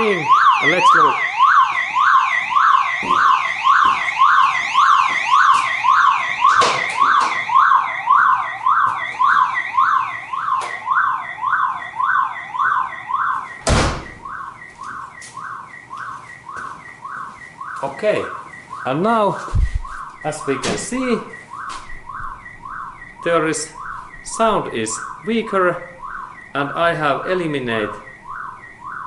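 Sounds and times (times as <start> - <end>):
car alarm siren warbling: 0.0 - 29.0
loud thump: 13.6 - 14.2.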